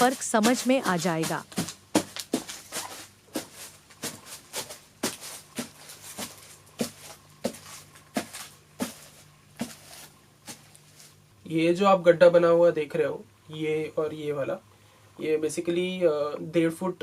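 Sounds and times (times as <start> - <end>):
footsteps walking: 0.0 - 11.2
faint rustling: 0.0 - 11.3.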